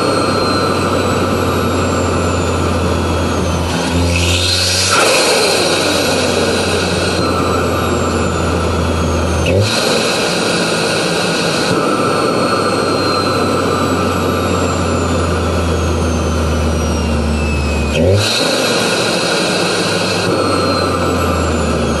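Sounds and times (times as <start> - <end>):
high turbo whistles: 0.0 - 22.0
turbo engine drone: 0.0 - 22.0
turbo flutter burst: 3.5 - 14.7.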